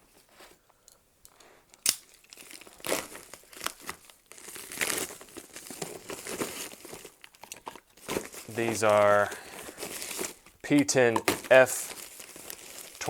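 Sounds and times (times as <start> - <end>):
envelope tearing and crinkling: 2.2 - 7.3, 8.0 - 10.5, 11.4 - 13.0.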